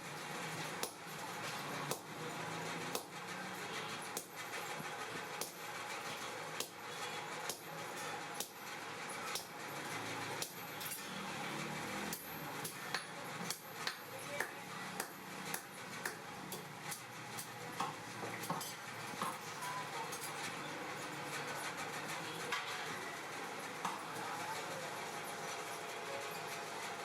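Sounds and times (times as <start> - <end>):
hammer striking steel on anvil: 0.8 - 1.1, 2.9 - 3.2, 8.4 - 8.7, 10.4 - 11.1, 12.1 - 19.4.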